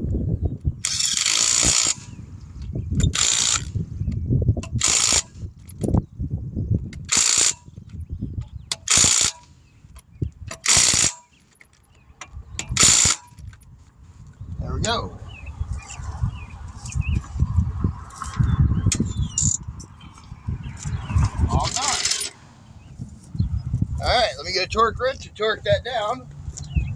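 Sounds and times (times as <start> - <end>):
ratchet wrench clicking: 0.8 - 2.1, 3.0 - 3.8, 4.6 - 6.0, 7.0 - 7.7, 8.7 - 11.4, 12.6 - 13.6
low rumble: 14.4 - 25.4.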